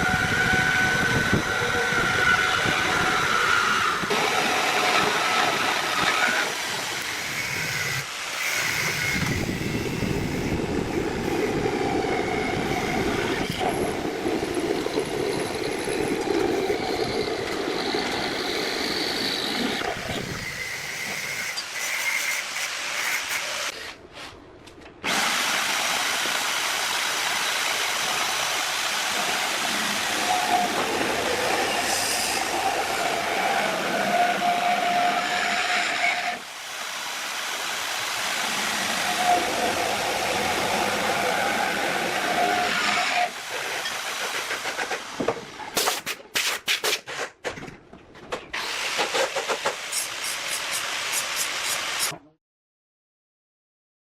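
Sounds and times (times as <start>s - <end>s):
electric drill boring into steel: 0.0s - 23.8s, 25.0s - 44.0s
drill bit squealing: 15.0s - 23.5s.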